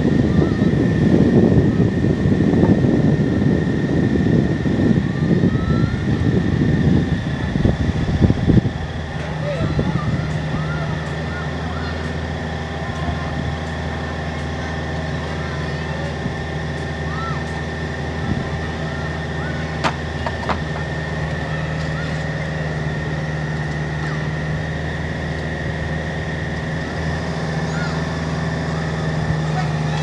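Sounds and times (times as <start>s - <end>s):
diesel engine running: 6.9s - 30.0s
sharp knocks: 19.8s - 21.0s.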